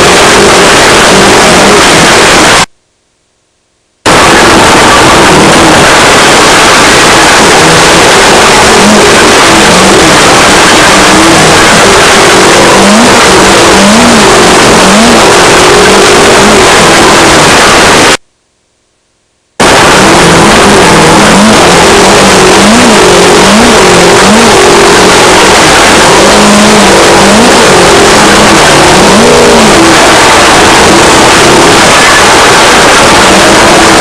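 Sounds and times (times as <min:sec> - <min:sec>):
loud rushing noise: 0:00.0 - 0:02.7, 0:04.1 - 0:18.2, 0:19.6 - 0:34.0
race car engine revving: 0:00.0 - 0:02.7, 0:04.1 - 0:18.2, 0:19.6 - 0:34.0.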